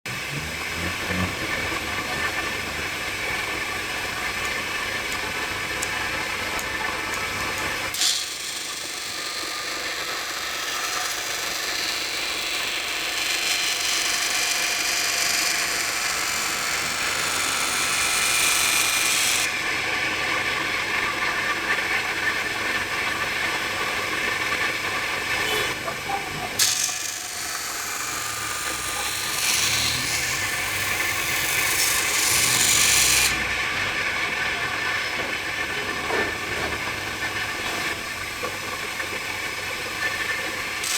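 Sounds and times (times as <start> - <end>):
blade grinding on sharpening stone: 26.6 - 33.4.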